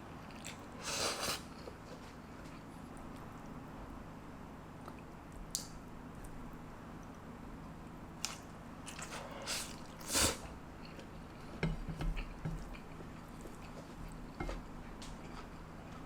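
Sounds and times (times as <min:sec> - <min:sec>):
person chewing noodles: 0:00.2 - 0:01.9, 0:08.2 - 0:16.0.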